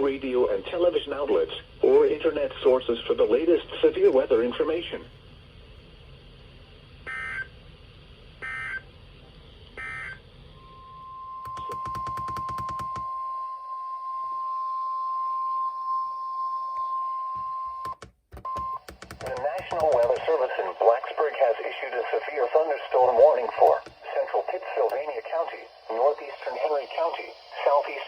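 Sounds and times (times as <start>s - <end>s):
steady warning alarm tone: 9.8s - 28.0s.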